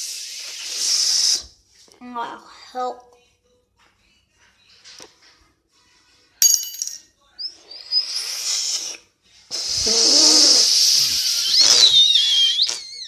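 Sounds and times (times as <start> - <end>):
breath whistling through teeth: 0.0 - 1.6, 7.4 - 13.0.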